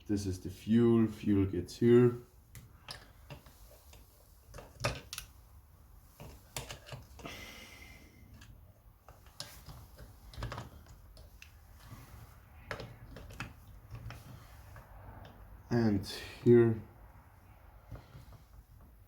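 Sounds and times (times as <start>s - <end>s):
small tools clicking and knocking: 2.5s - 5.3s, 6.2s - 7.4s, 12.6s - 14.4s.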